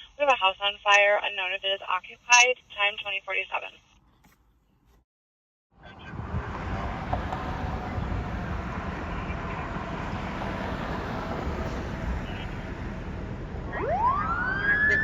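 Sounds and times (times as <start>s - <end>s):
road noise: 5.7s - 15.0s
vehicle engine rumbling: 5.7s - 15.0s.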